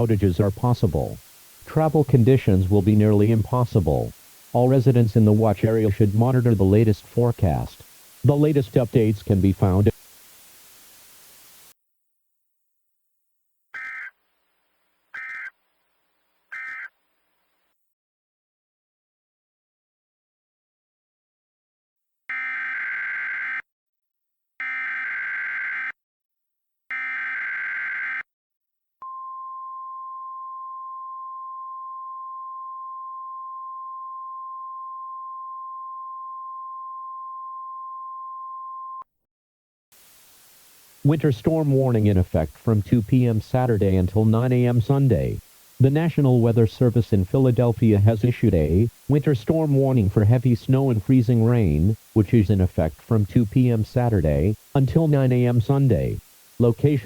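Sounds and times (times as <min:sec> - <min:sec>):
static hiss: 0:00.0 - 0:11.8, 0:40.0 - 0:57.0.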